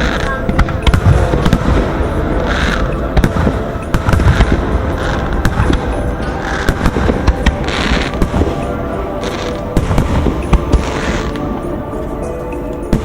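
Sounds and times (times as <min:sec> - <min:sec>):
fireworks crackling hiss: 0:00.0 - 0:13.0.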